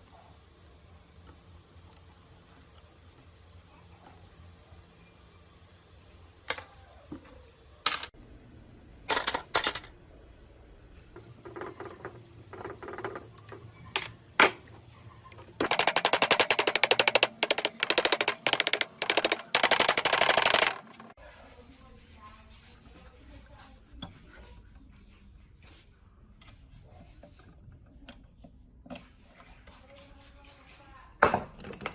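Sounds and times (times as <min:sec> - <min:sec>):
hard parts clicking and knocking: 0:15.3 - 0:21.1.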